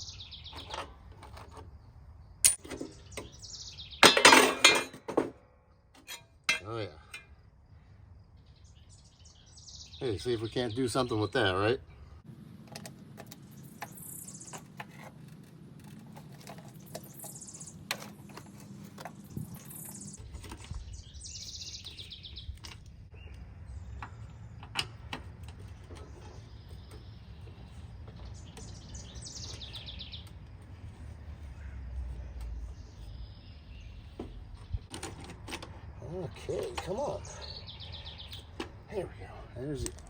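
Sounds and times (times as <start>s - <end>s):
small birds singing: 0.0s - 4.9s, 5.7s - 12.3s, 12.9s - 40.0s
hand tools clicking and tapping: 2.4s - 3.3s, 12.7s - 20.9s, 21.8s - 30.8s.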